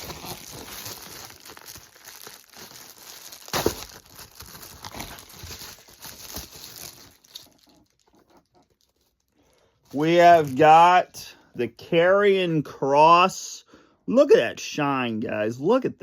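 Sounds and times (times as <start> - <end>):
packaging crinkling and tearing: 0.0 - 10.9.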